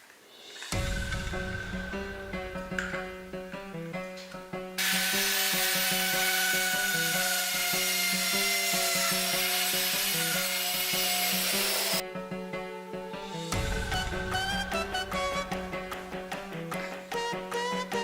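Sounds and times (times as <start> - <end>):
background music: 0.3 - 18.0
loud rasping noise: 4.8 - 12.0.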